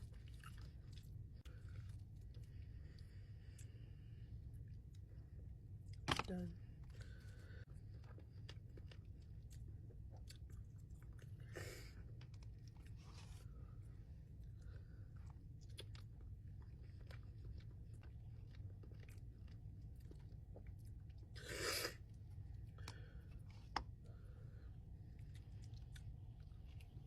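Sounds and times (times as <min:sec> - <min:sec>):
chewing fried chicken: 0:00.0 - 0:06.0, 0:06.8 - 0:27.0.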